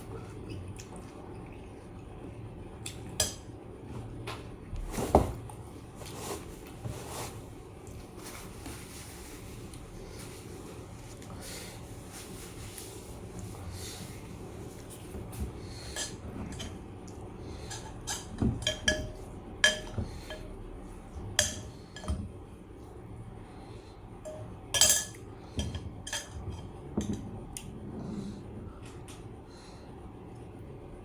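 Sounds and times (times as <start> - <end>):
metal utensils clinking against dishes: 15.9 - 16.8, 17.6 - 20.6, 21.4 - 22.2, 24.2 - 27.2.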